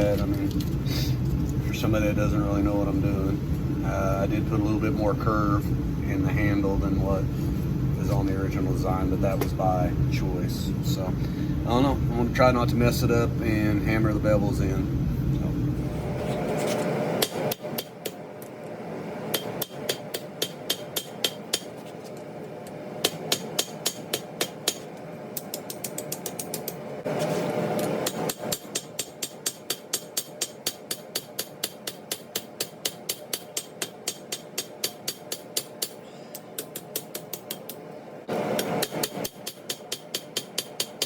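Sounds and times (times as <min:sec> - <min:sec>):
hammer striking steel blade: 0:19.3 - 0:21.8, 0:23.0 - 0:24.9, 0:28.0 - 0:37.8, 0:38.5 - 0:41.0.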